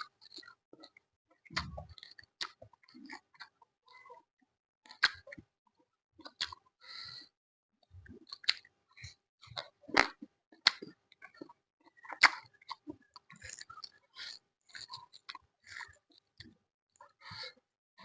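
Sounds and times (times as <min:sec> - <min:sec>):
person chewing food: 0:00.1 - 0:04.0, 0:04.9 - 0:05.4, 0:06.2 - 0:07.3, 0:08.0 - 0:17.6
wet mouth clicks: 0:01.5 - 0:03.5, 0:04.9 - 0:05.3, 0:06.2 - 0:06.6, 0:09.6 - 0:15.4.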